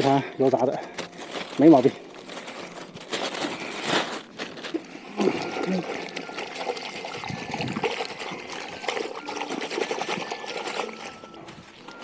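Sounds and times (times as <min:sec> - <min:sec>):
water trickling and splashing: 0:04.4 - 0:12.0.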